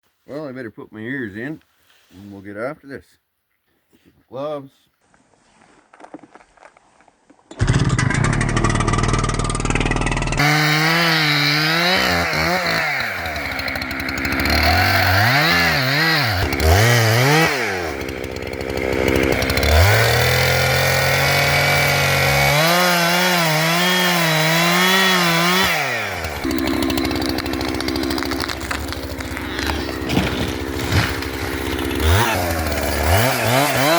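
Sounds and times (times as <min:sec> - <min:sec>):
chainsaw starting idling and revving: 0:07.5 - 0:33.9.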